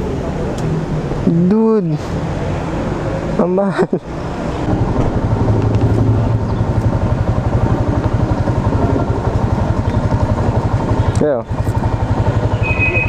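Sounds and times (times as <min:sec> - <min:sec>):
motorcycle engine idling: 0:04.8 - 0:13.0.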